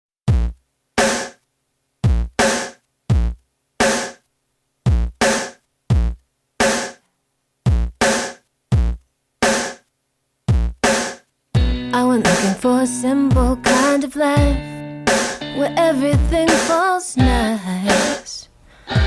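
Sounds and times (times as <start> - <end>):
drum-machine kick drum thumps: 0.2 - 1.4, 2.0 - 7.0, 7.6 - 15.5, 16.1 - 18.3
drum-machine snare hits: 0.3 - 1.4, 2.0 - 7.0, 7.7 - 9.9, 10.5 - 12.6, 13.3 - 15.5, 16.2 - 18.2.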